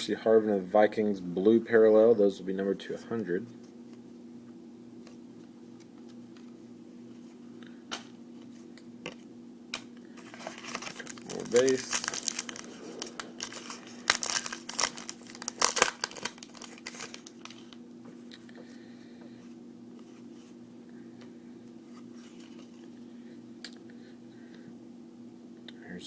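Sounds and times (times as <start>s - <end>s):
foil wrapper tearing and crumpling: 10.2s - 17.8s.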